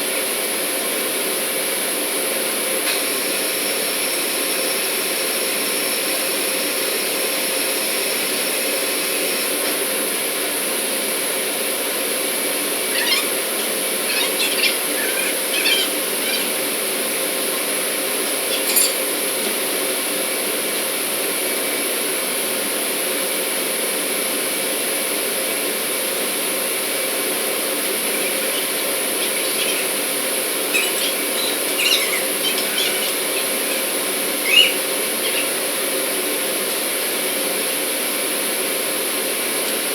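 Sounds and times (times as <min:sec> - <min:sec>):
faint hum: 0:11.8 - 0:21.7, 0:26.2 - 0:39.5
high-pitched squeaks: 0:18.4 - 0:19.1.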